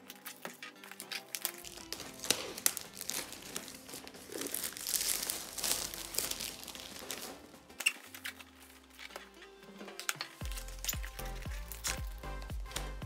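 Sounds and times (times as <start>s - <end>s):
packaging crinkling: 0.0s - 13.0s.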